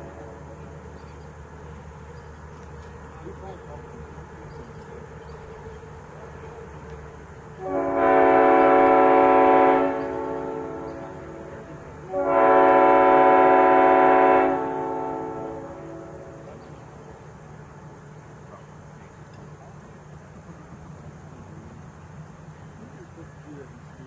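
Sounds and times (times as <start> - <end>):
locomotive air horn chord: 0.0 - 1.9, 7.5 - 17.3.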